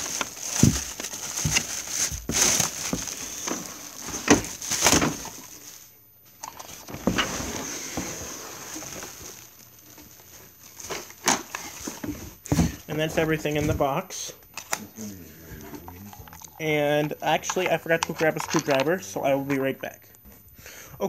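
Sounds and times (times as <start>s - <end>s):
cardboard packaging scraping and rustling: 0.0s - 5.8s, 6.6s - 13.3s.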